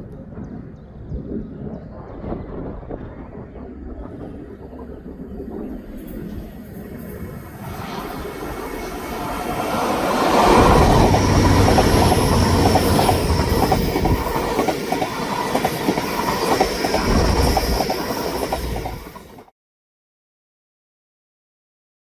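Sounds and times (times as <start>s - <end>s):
train rumbling past: 4.4s - 19.5s.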